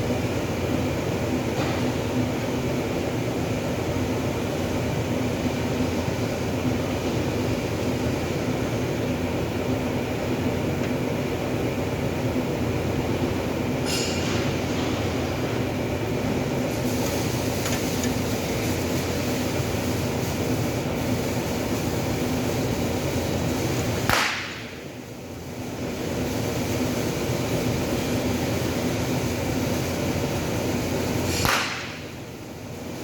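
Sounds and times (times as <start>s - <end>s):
steady mechanical hum: 0.0s - 33.0s
stud welder cracks: 24.1s - 24.8s, 31.4s - 32.1s.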